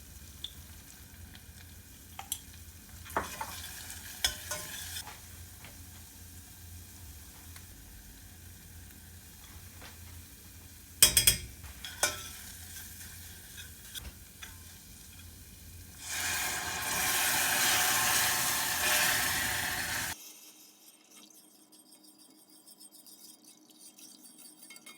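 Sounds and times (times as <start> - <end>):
food sizzling in a pan: 0.0 - 21.4
utensils clinking: 11.0 - 15.3.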